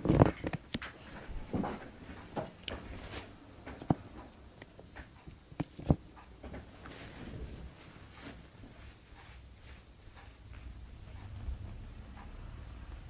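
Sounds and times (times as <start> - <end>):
small knocks and clicks: 3.6 - 6.9.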